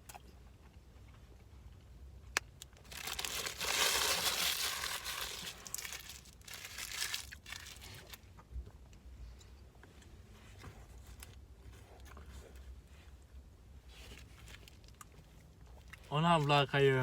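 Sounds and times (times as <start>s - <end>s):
paper packaging crinkling: 2.6s - 8.2s.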